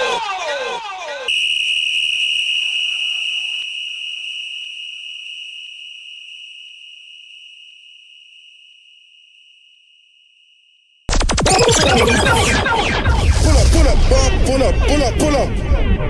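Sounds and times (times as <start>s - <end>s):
high-pitched electronic tone: 11.1s - 16.0s.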